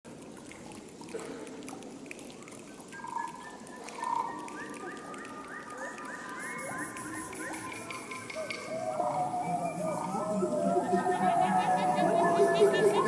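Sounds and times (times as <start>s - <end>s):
frogs croaking: 3.0s - 13.0s
animal calls: 7.5s - 13.0s.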